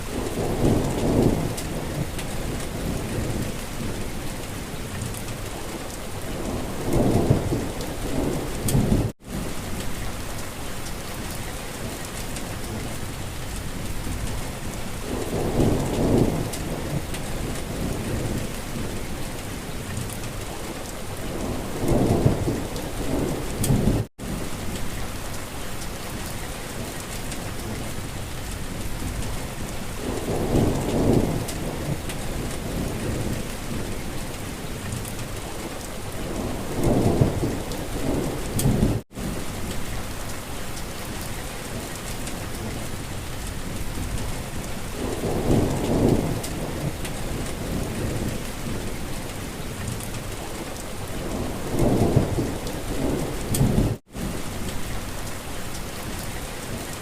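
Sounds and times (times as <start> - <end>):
low rolls of thunder: 0.0 - 4.1, 6.3 - 9.8, 12.7 - 19.1, 21.2 - 25.3, 26.8 - 40.0, 41.7 - 55.3
steady rain falling: 0.0 - 57.0.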